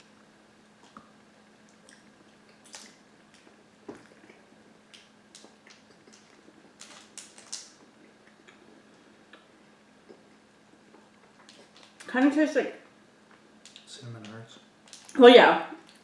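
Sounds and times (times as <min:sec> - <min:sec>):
snack being eaten crunching: 0:01.7 - 0:08.8
snack packet crinkling: 0:02.5 - 0:04.2, 0:04.9 - 0:08.0, 0:11.4 - 0:12.1, 0:13.6 - 0:15.2.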